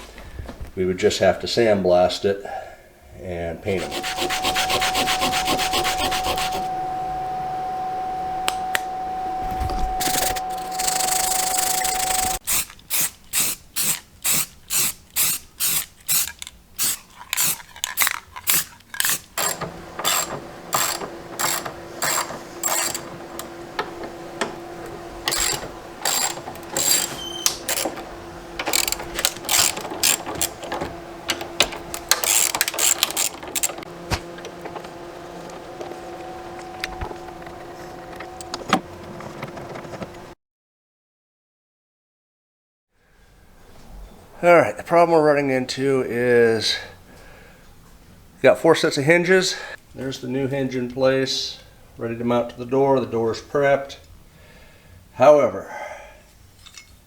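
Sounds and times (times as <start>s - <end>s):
steady hum: 3.0s - 12.8s, 17.5s - 40.3s
ratchet wrench clicking: 10.7s - 23.0s, 25.3s - 28.0s, 28.6s - 30.6s, 31.3s - 33.8s.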